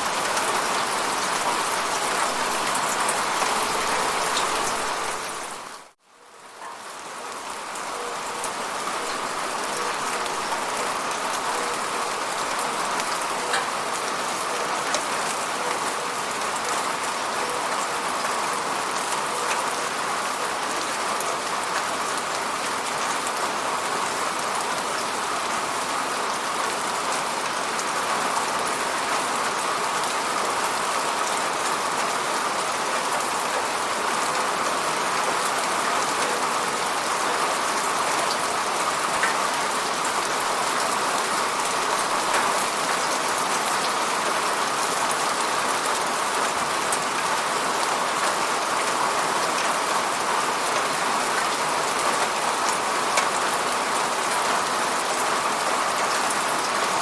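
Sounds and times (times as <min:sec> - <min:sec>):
rain pattering: 0:00.0 - 0:57.0.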